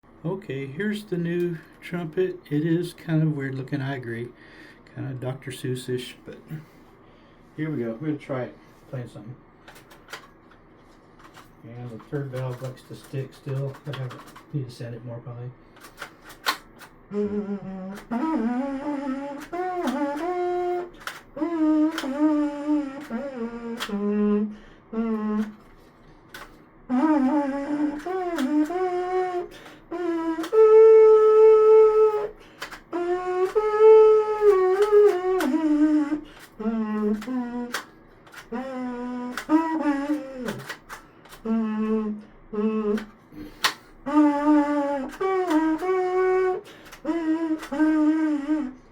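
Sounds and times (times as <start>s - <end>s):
sharp clicks: 9.7s - 10.6s, 11.2s - 14.5s, 15.8s - 17.0s, 19.4s - 24.1s, 25.4s - 26.6s, 32.1s - 33.7s, 34.4s - 41.6s, 45.0s - 46.1s, 46.7s - 48.0s
plastic trumpet playing slow tune: 15.3s - 48.9s.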